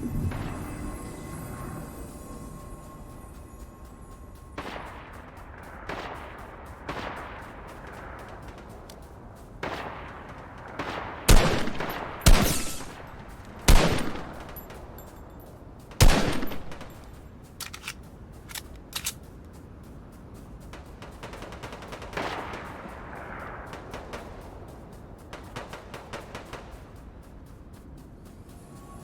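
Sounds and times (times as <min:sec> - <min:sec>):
video game gunshots echoing: 0:09.6 - 0:14.8, 0:16.0 - 0:17.1
faint clicks: 0:11.6 - 0:29.0.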